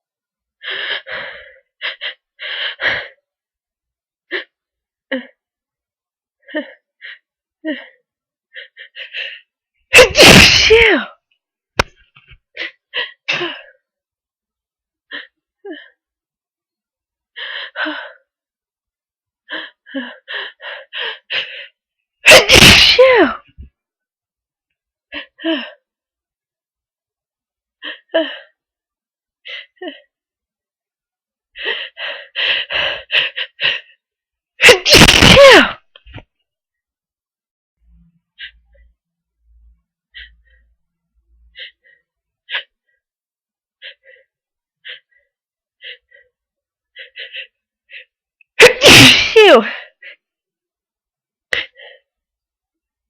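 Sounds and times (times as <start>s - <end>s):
person gasping before a sneeze: 10.0s - 10.9s, 22.3s - 23.4s, 34.6s - 35.8s, 48.6s - 49.7s.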